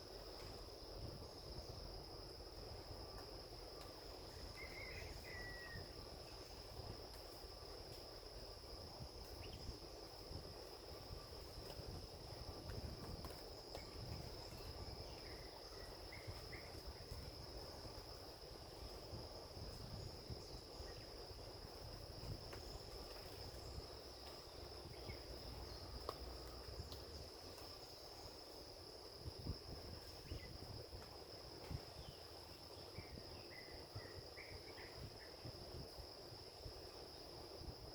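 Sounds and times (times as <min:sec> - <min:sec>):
insects trilling: 0:00.0 - 0:37.9.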